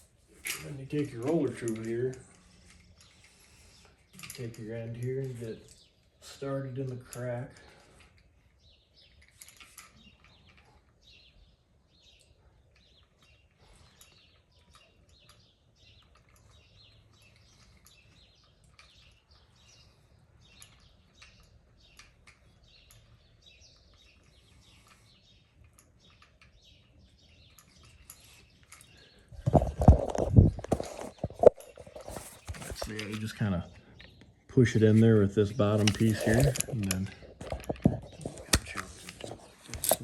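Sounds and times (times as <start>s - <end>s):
spline roller clicking and crinkling: 35.6s - 40.0s.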